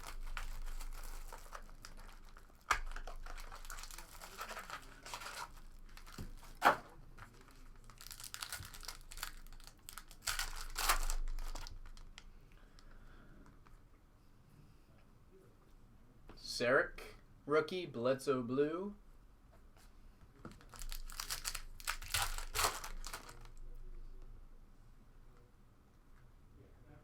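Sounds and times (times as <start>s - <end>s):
foil ripping: 0.0s - 12.0s, 20.6s - 23.6s
foil packs crinkling: 0.0s - 12.2s, 20.5s - 23.6s.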